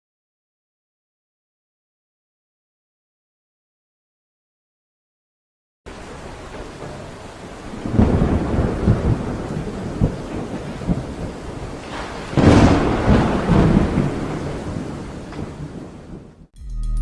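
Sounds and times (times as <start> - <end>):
steady rain: 5.9 - 16.5
thunder rumbling: 5.9 - 16.5.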